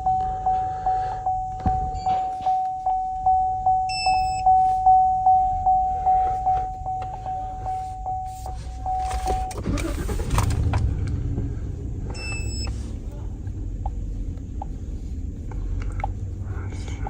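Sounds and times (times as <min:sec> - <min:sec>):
short electronic beep: 0:00.0 - 0:09.6, 0:12.2 - 0:12.8
dashboard warning chime: 0:00.0 - 0:10.0, 0:12.1 - 0:12.8.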